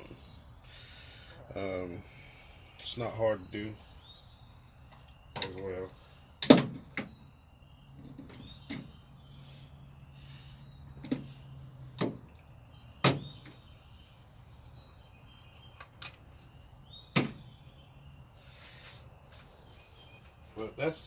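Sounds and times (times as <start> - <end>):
car parts clicking and knocking: 10.9 - 13.6.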